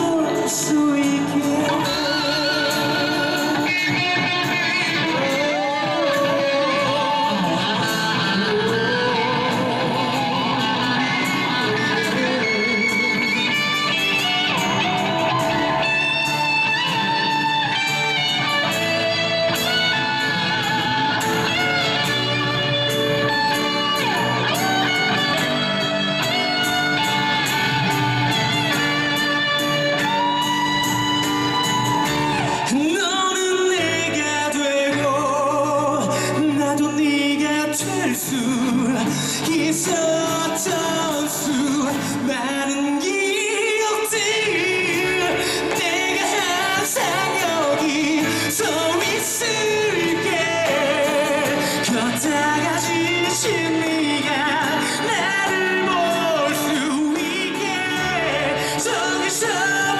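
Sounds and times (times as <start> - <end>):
electric guitar: 0.0 - 59.9
live rock band playing: 0.0 - 59.9.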